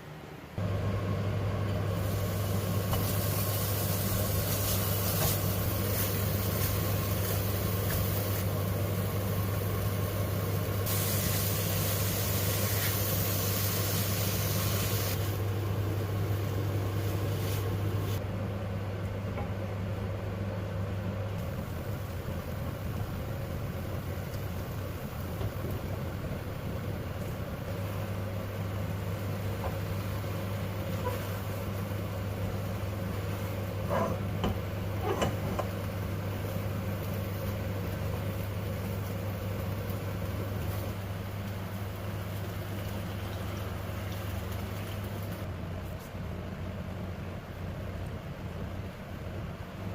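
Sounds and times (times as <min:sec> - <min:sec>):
hissing noise: 0:10.8 - 0:15.5.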